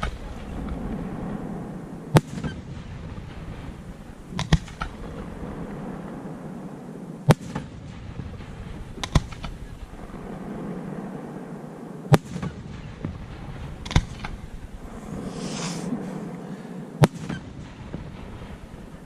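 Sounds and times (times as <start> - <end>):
low rumble: 0.0 - 2.1, 7.8 - 19.0.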